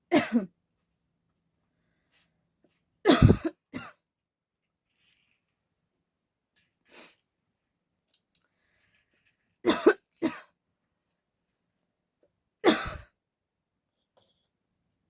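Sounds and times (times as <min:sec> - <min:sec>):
person coughing: 0:00.1 - 0:00.5, 0:03.1 - 0:04.0, 0:09.7 - 0:10.5, 0:12.6 - 0:13.1.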